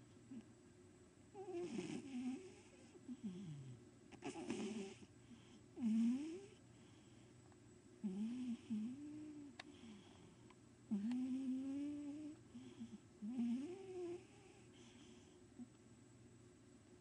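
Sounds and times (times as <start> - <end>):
cat snoring: 1.4 - 7.1, 8.0 - 15.4.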